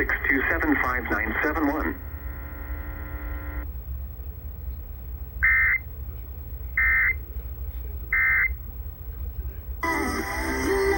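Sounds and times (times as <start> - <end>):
buzzing digital data tones: 2.1 - 3.6.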